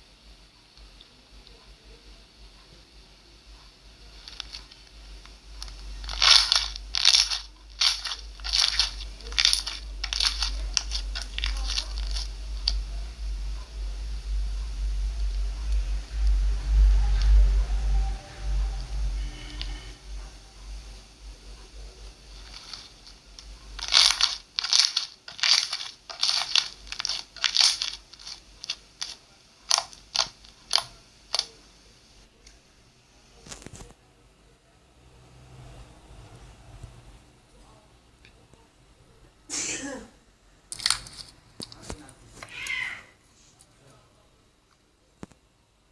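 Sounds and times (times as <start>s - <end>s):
low hum: 0.0s - 33.1s
slime squelching: 5.6s - 12.9s, 22.1s - 31.5s.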